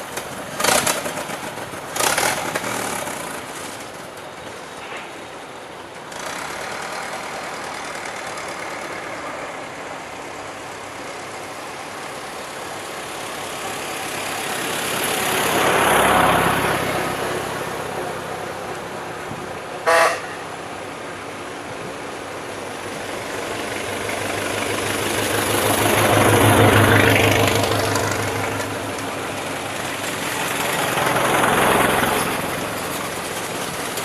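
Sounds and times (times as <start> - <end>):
cars passing on road: 0.0 - 34.0
loud pitched horn blast: 19.8 - 20.4.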